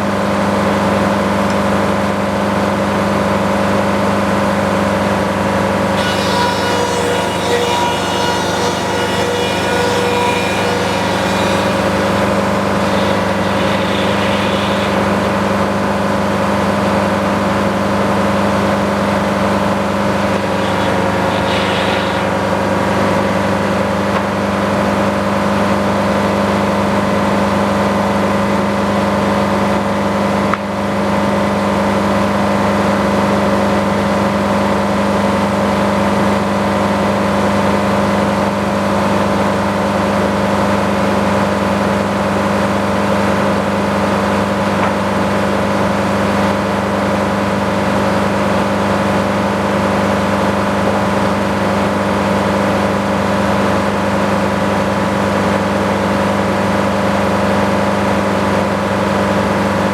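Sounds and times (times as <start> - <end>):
sawmill engine running: 0.1 - 32.6.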